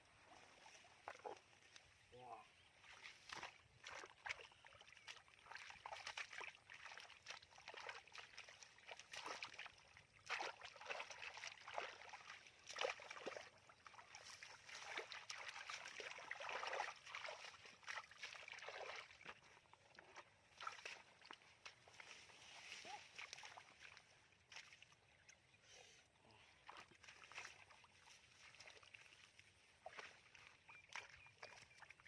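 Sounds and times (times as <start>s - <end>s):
hands splashing in muddy water: 2.8s - 25.0s, 26.6s - 32.0s.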